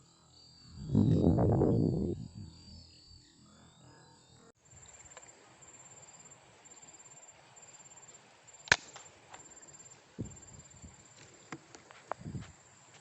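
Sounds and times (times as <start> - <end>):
insects trilling: 0.0 - 13.0
air rifle shot: 8.7 - 9.0.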